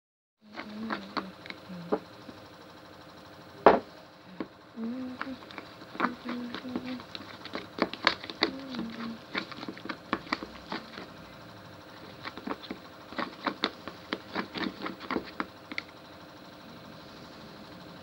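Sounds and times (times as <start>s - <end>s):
slime kneaded by hand: 5.1s - 11.2s, 11.9s - 15.9s.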